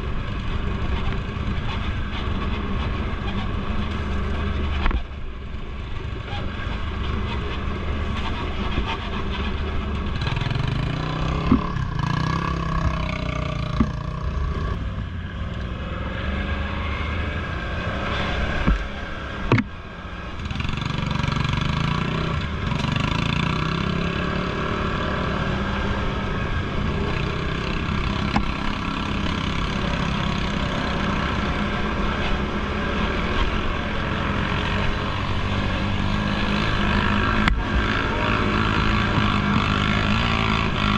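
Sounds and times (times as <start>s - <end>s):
atv engine running: 0.0s - 16.4s, 17.2s - 40.9s
sharp knocks: 13.7s - 14.1s, 19.5s - 19.7s.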